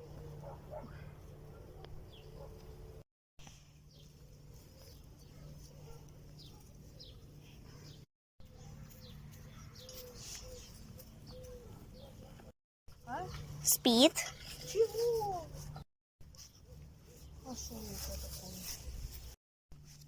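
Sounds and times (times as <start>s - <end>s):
small birds chirping: 3.9s - 12.5s.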